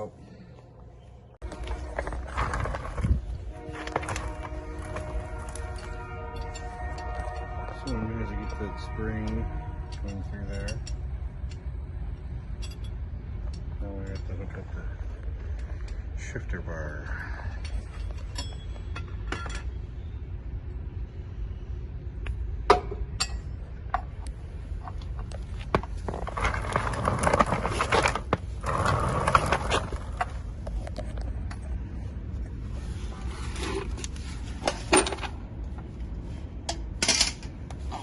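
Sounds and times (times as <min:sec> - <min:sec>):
metal scraping: 0:01.4 - 0:11.1, 0:24.7 - 0:31.2
metal tools clinking: 0:03.8 - 0:11.7, 0:12.5 - 0:14.7, 0:17.4 - 0:20.0.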